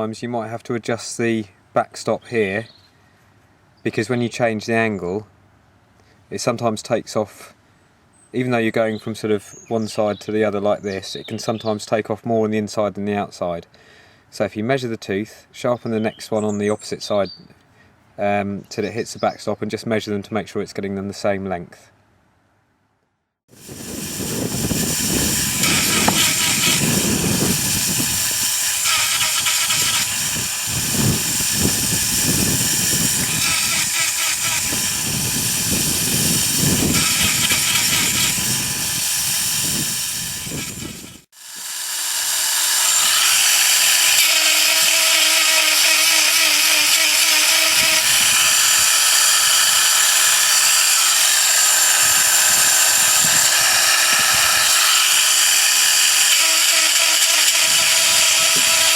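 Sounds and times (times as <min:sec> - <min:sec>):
electric chain grinder grinding: 0:23.5 - 0:58.9.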